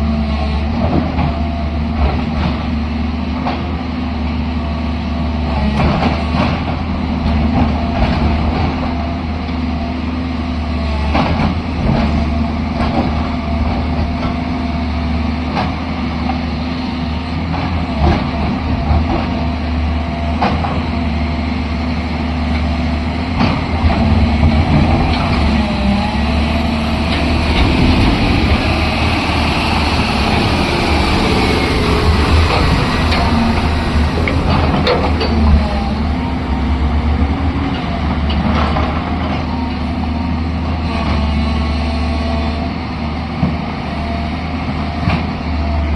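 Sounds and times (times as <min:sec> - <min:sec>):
excavator diesel engine running: 0:00.0 - 0:45.9
metal knocks and clanks: 0:23.4 - 0:36.3.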